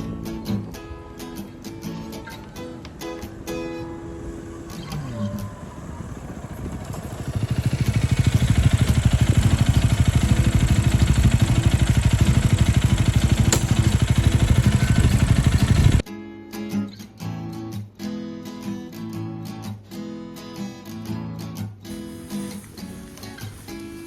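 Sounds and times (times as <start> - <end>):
motorcycle engine running: 3.9 - 16.0.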